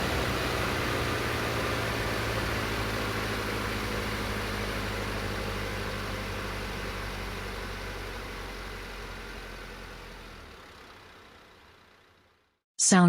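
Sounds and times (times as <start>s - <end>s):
road and wind noise: 0.0s - 7.2s
van diesel engine running: 0.0s - 12.6s.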